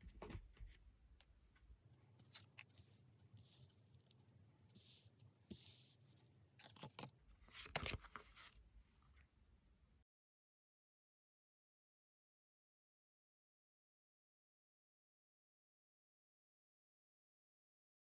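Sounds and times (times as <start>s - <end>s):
cards rustling and sliding: 2.2s - 4.2s, 4.8s - 8.6s.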